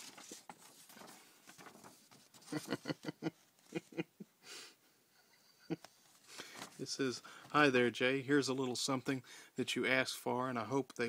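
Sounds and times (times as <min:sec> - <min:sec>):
packaging rustling: 0:00.0 - 0:02.8.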